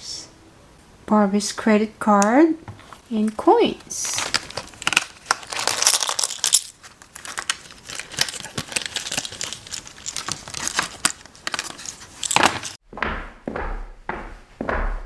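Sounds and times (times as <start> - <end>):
plastic packaging crinkling: 2.7 - 12.8.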